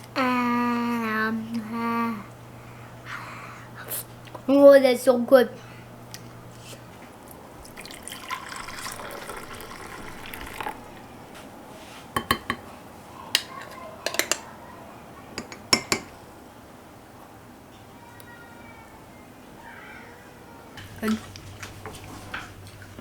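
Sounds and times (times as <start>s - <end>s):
liquid poured into a cup: 7.6s - 11.0s.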